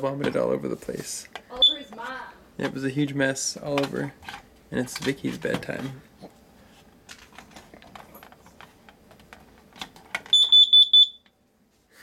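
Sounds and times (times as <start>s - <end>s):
shrill alarm beeps: 1.6s - 1.9s, 10.3s - 11.2s.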